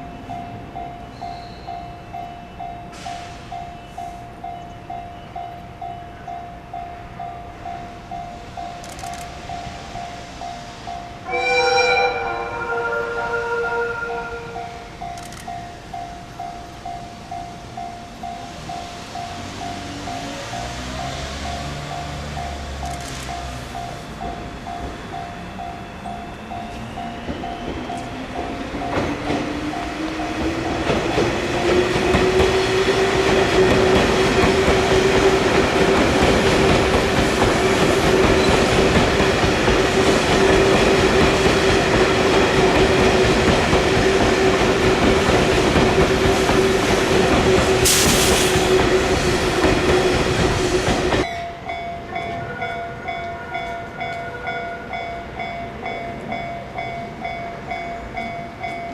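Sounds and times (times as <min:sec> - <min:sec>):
electric train passing: 0:00.0 - 0:58.9
level-crossing bell ringing: 0:03.6 - 0:22.7, 0:23.3 - 0:31.3, 0:51.2 - 0:58.9.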